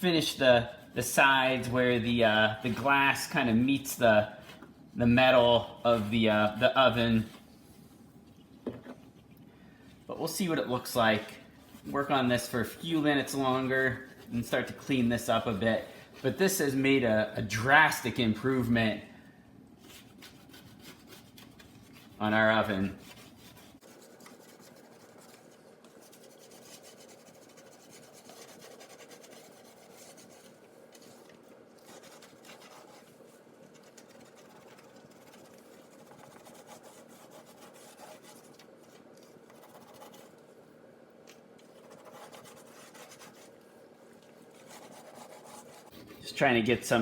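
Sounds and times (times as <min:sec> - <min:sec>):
tablet scrubbing on glass: 0:11.8 - 0:17.0, 0:19.8 - 0:40.4, 0:41.6 - 0:43.6.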